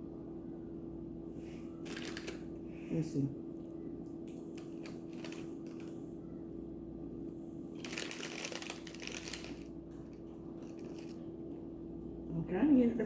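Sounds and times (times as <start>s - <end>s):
steady low hum: 0.0s - 13.0s
crackling and rustling: 1.8s - 2.5s, 4.2s - 6.2s, 7.1s - 11.3s.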